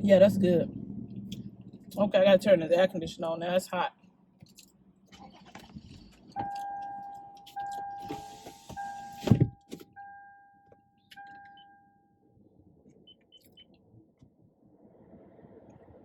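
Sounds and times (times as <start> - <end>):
car warning chime pinging: 6.4 - 12.3.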